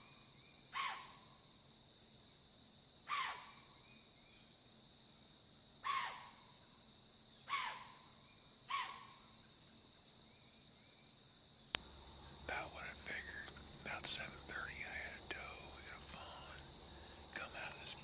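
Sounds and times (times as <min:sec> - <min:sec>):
high insect chorus: 0:00.0 - 0:18.0.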